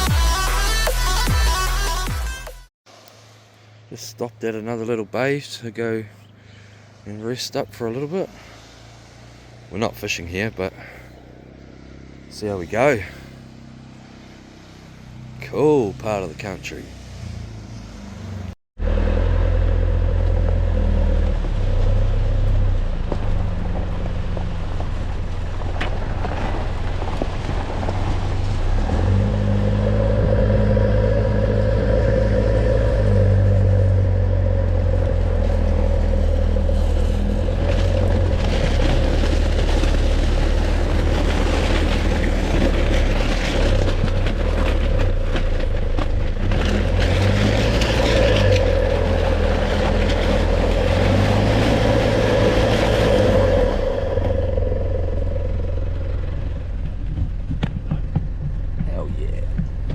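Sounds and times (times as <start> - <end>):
engine and road drone: 0.0 - 59.9.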